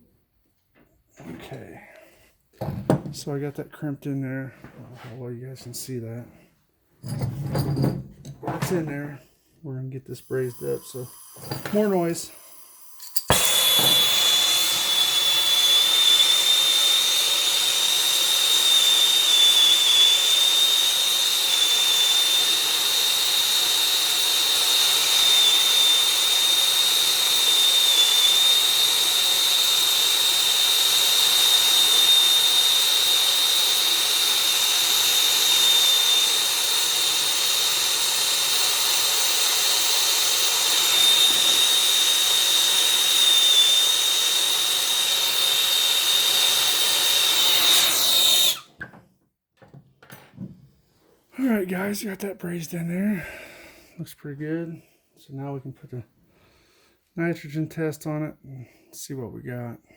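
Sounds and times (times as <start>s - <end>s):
torch hissing: 10.1s - 48.7s
high whistle: 13.1s - 24.0s.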